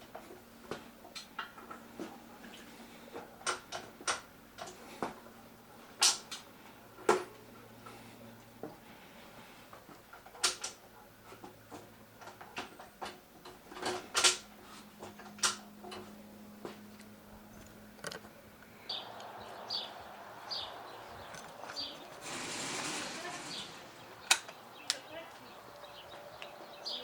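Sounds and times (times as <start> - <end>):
tools and parts clicking: 17.6 - 18.3.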